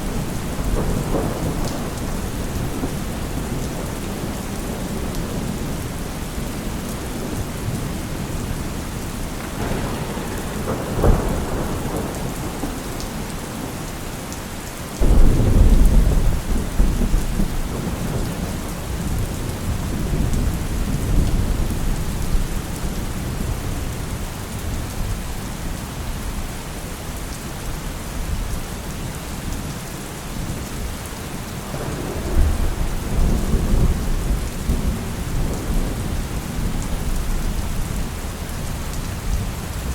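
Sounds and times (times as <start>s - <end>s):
loud thunderclap: 0.0s - 6.4s, 7.0s - 13.8s, 15.0s - 23.7s, 31.6s - 38.4s
thunder rumbling: 0.0s - 14.0s, 15.0s - 24.9s, 31.6s - 39.9s
heavy rain: 0.0s - 39.9s.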